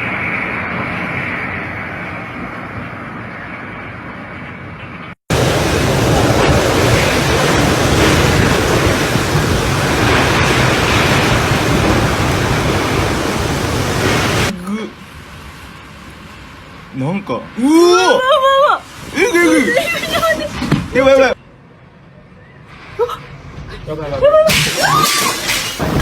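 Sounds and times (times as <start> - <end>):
wind and rain rushing: 5.3 - 21.4, 24.5 - 26.0.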